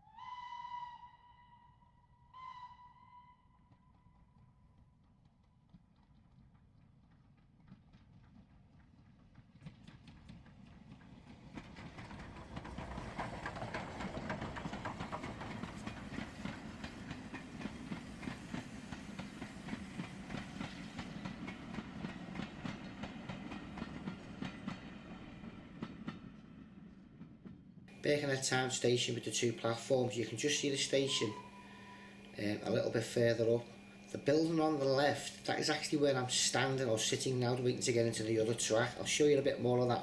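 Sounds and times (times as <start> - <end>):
distant train rumble: 5.2 - 40.0
wheels clicking over rail joints: 9.6 - 25.2.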